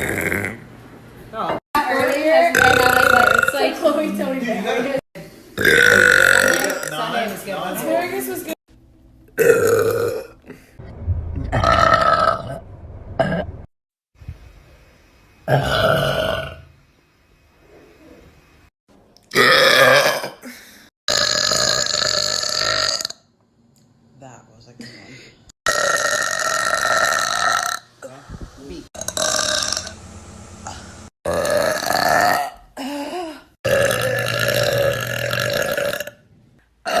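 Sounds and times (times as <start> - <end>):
woman burping: 2.0 - 3.8, 5.6 - 7.0, 9.4 - 10.6, 13.2 - 13.5, 19.3 - 20.5, 25.7 - 27.8, 30.6 - 36.2.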